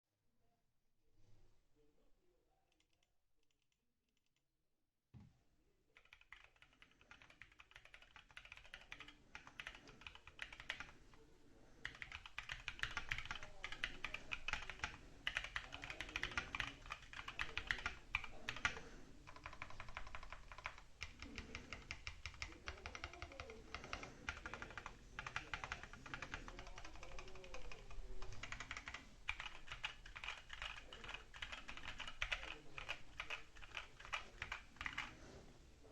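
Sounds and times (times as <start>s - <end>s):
mechanical keyboard typing: 6.0s - 11.0s, 11.8s - 35.2s.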